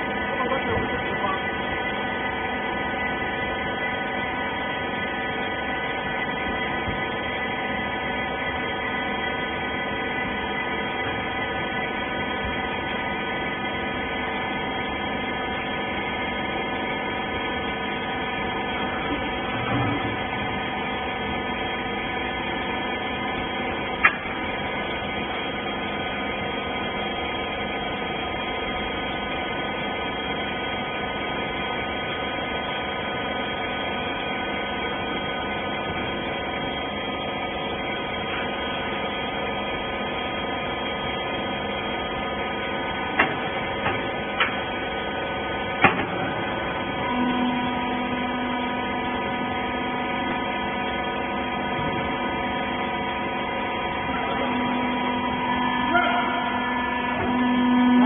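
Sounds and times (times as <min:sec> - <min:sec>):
baling machine motor hum: 0:00.0 - 0:58.0.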